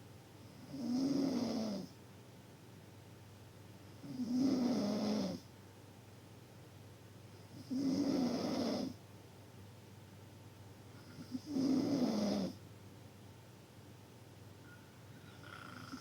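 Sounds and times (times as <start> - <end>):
loud snoring: 0.6 - 1.9, 4.1 - 5.4, 7.6 - 9.0, 11.0 - 12.6, 15.4 - 16.0.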